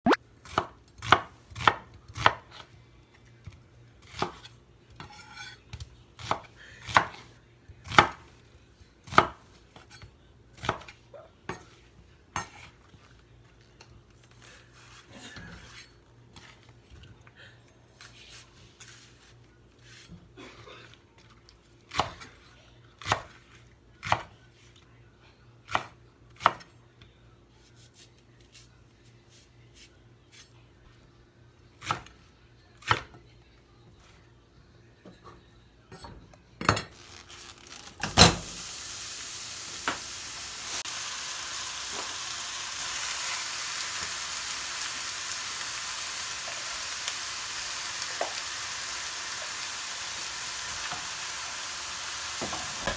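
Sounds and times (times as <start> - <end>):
knife chopping on cutting board: 0.4 - 2.6, 4.1 - 5.5, 6.2 - 7.2.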